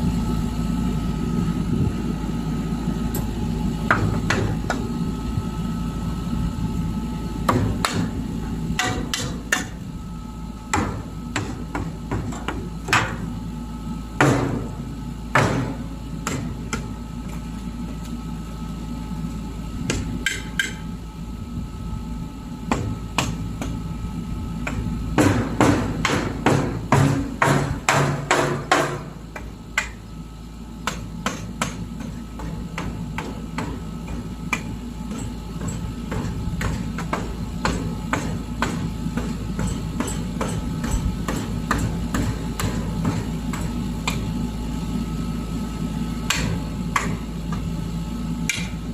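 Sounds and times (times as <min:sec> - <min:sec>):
low engine hum: 0:00.0 - 0:48.9
hammer blows and knocks: 0:24.7 - 0:30.0.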